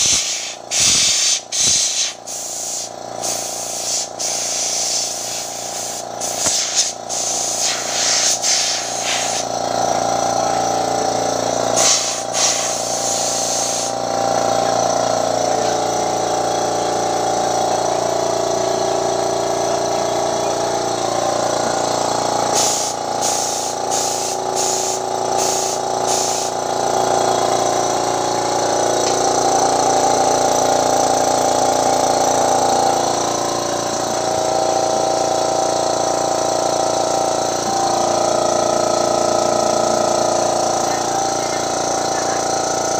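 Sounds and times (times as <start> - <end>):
pressure washer spray hissing: 0.0 - 9.5, 11.7 - 14.0, 22.5 - 26.6
pressure washer motor humming: 0.0 - 42.9.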